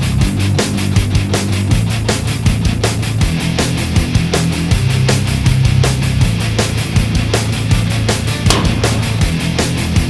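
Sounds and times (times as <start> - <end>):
hard rock music: 0.0 - 10.0.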